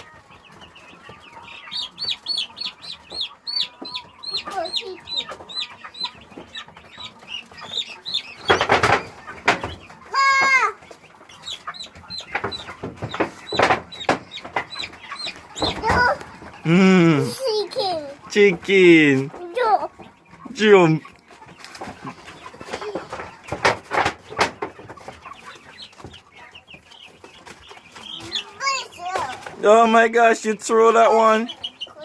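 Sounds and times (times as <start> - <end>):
chicks peeping: 0.0 - 32.0.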